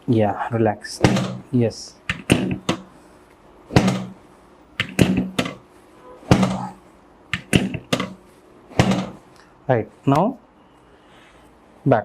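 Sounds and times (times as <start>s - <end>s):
sharp thunks of spinal thrusts: 1.0s - 1.5s, 2.1s - 2.9s, 3.7s - 4.2s, 4.8s - 5.6s, 6.2s - 9.3s.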